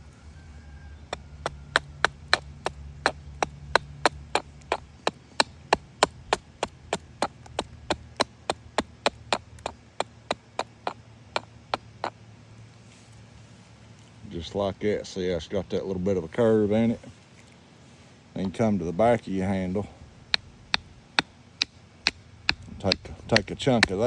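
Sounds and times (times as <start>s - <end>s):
hatchet chopping wood: 1.1s - 12.0s, 21.6s - 24.0s.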